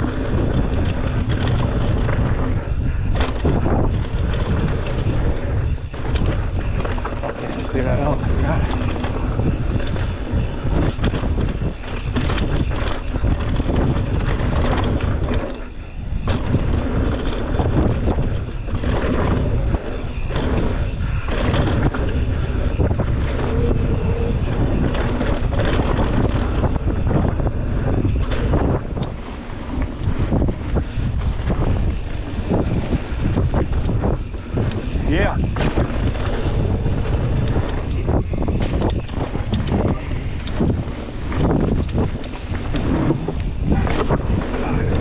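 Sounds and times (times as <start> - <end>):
bike knocking over bumps: 0.0 - 29.2, 29.8 - 45.0
chain and frame rattling: 0.0 - 29.4
bicycle tyre roar on dirt: 0.0 - 45.0
wind noise on microphone: 0.0 - 45.0.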